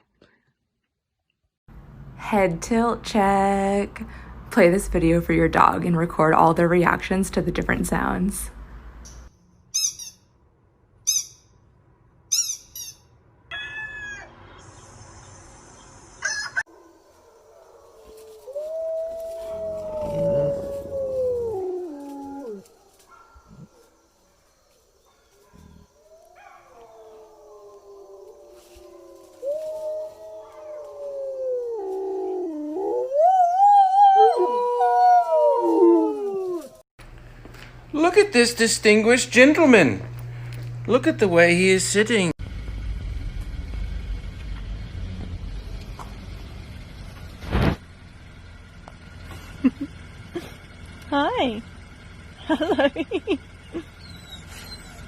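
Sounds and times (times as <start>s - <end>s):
high bird-like chirps: 9.1s - 10.4s, 11.0s - 11.6s, 12.3s - 16.6s
dog howling: 16.3s - 23.7s, 25.5s - 36.8s.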